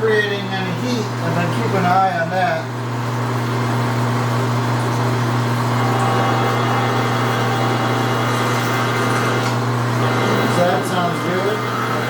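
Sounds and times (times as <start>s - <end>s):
lathe humming: 5.4s - 12.0s.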